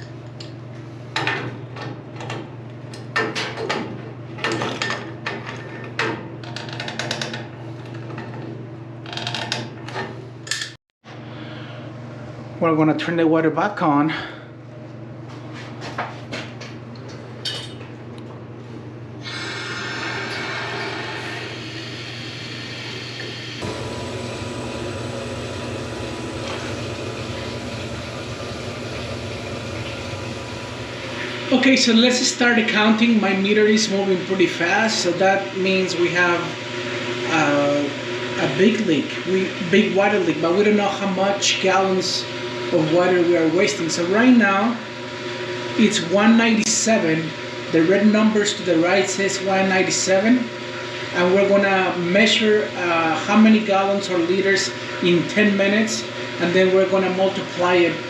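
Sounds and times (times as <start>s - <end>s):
steady low hum: 11.1s - 44.7s
water rushing through pipe: 19.3s - 31.5s.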